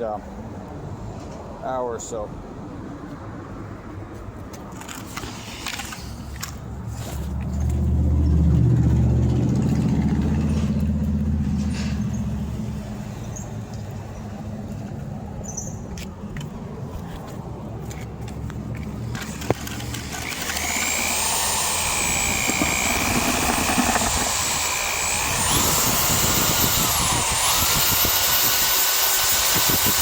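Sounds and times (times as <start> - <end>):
vehicle driving past: 6.8 - 14.7.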